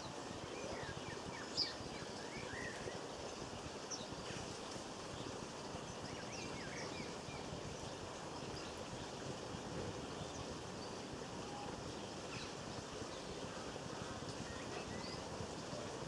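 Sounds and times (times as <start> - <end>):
small birds chirping: 0.0 - 16.0.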